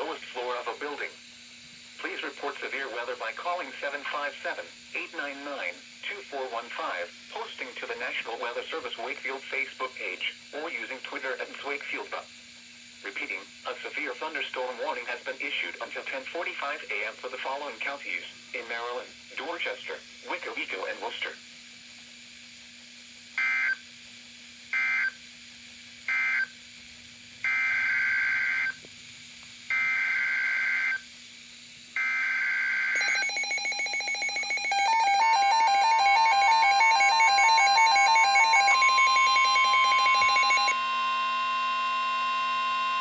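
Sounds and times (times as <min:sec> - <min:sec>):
steady warning alarm tone: 0:27.4 - 0:28.8, 0:29.7 - 0:31.0, 0:32.0 - 0:43.0
pulsing electronic alert tones: 0:33.0 - 0:41.1.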